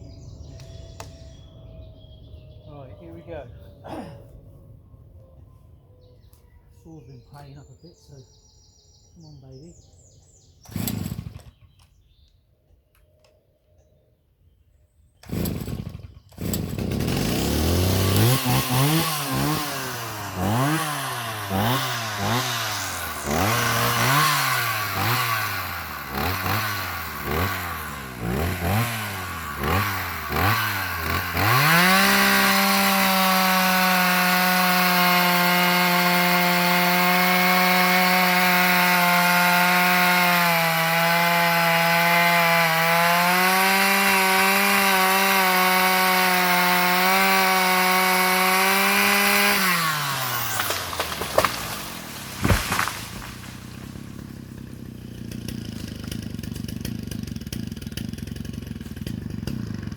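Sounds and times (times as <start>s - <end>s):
chainsaw revving: 10.6s - 11.7s, 15.2s - 59.9s.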